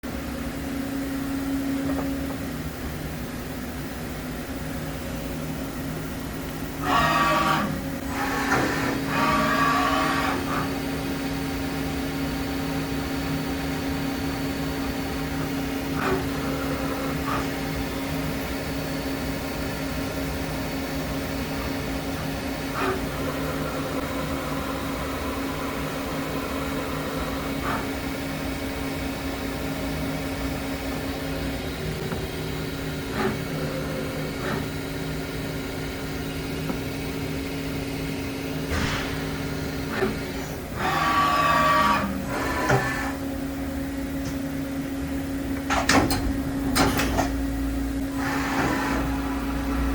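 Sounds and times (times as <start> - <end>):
machine two-tone hum: 0.0 - 49.9.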